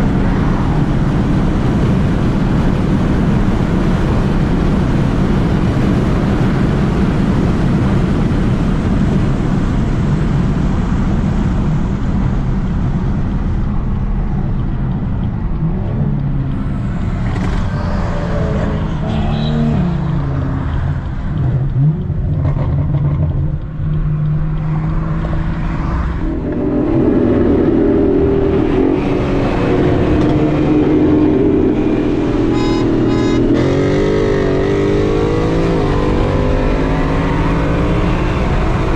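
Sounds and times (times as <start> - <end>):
car engine running: 0.0 - 35.1
road and wind noise: 0.0 - 38.9.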